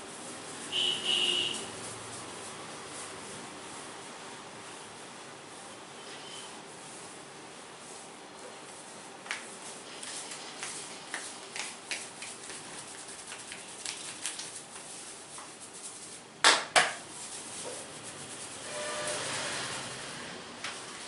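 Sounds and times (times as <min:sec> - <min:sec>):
hands patting a head: 0:09.2 - 0:15.6.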